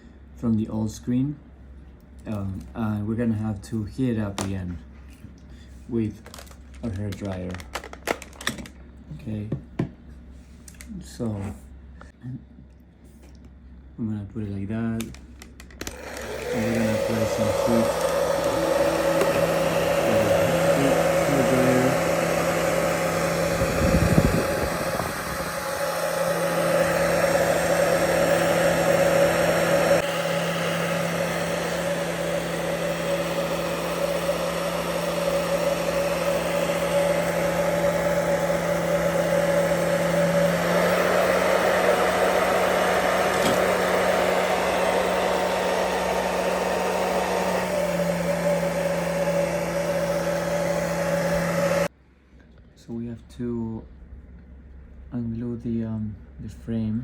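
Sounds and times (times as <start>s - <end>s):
hair dryer running: 15.7s - 51.9s.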